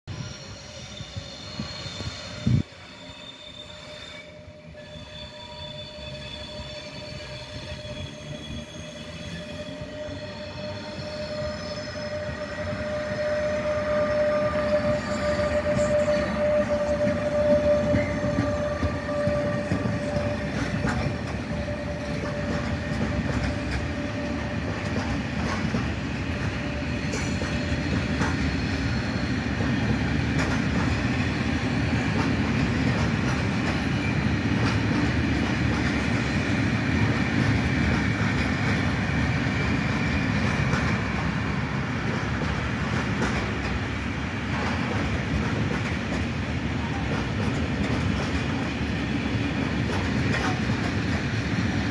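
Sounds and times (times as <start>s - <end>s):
freight train rumbling past: 0.1s - 51.9s
wheels clicking over rail joints: 15.6s - 28.5s, 42.0s - 48.8s, 49.7s - 51.8s.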